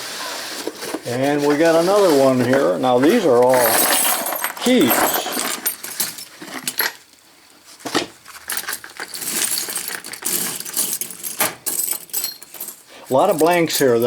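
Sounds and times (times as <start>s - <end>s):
metal keys clinking: 3.5s - 7.0s, 8.5s - 14.0s.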